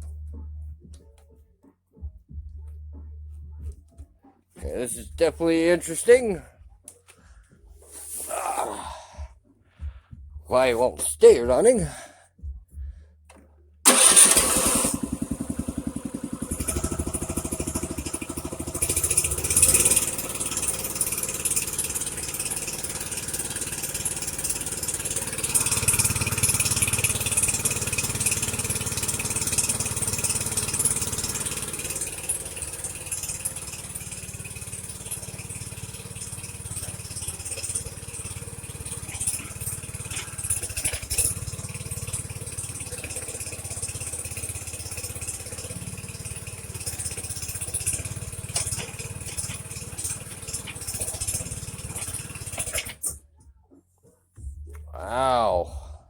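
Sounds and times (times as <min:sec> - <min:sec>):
small gasoline engine running: 0:13.8 - 0:53.2.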